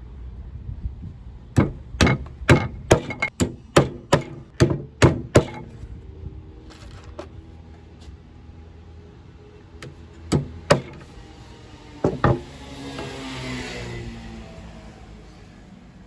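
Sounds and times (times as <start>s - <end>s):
wooden pieces knocking: 1.6s - 5.7s, 9.8s - 11.1s, 12.0s - 13.2s.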